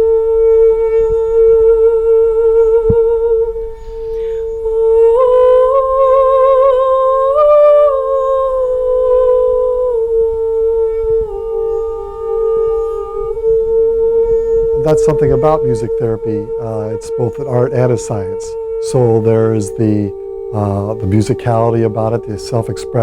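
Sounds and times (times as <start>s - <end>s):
held drone note: 0.0s - 23.0s
humming note with vibrato: 0.0s - 23.0s.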